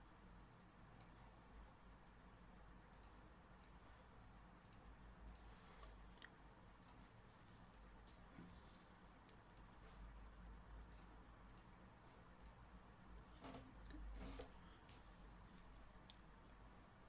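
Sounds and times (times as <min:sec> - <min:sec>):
low steady hum: 0:00.0 - 0:17.0
computer mouse clicks: 0:00.9 - 0:01.2, 0:02.9 - 0:03.8, 0:04.6 - 0:08.5, 0:09.2 - 0:10.0, 0:10.8 - 0:12.6.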